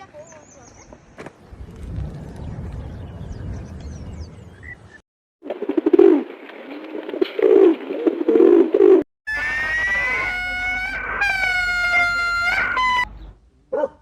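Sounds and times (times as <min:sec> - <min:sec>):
low rumble: 0:01.4 - 0:04.4
low bird cooing calls: 0:07.4 - 0:09.0.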